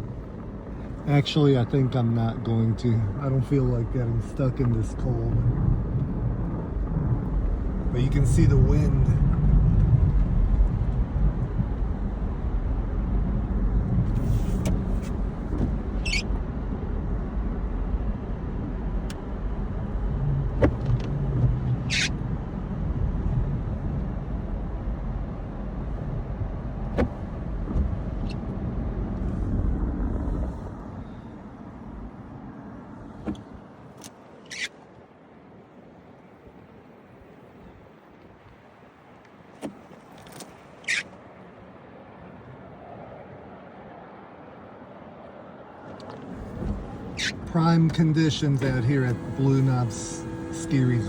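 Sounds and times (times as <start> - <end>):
car engine and tyre rumble: 0.0 - 51.0
short clicks and squeaks: 16.0 - 16.3, 21.9 - 22.2, 34.4 - 34.8, 40.2 - 41.1, 47.2 - 47.6.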